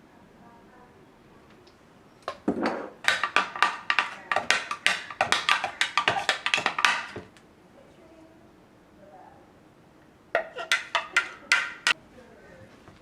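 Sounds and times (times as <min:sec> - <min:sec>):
knife chopping on wooden board: 0:02.6 - 0:07.3, 0:10.4 - 0:12.0.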